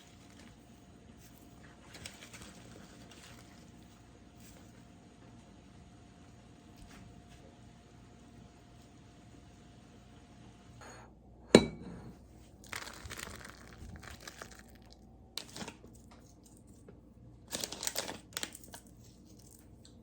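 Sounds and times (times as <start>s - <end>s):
material crinkling and rustling: 0.0s - 4.8s, 12.4s - 16.9s.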